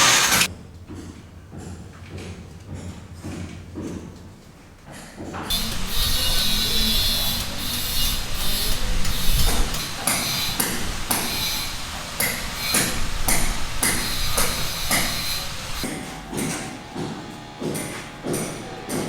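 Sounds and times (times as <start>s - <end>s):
sharp hammering strikes: 5.5s - 19.0s.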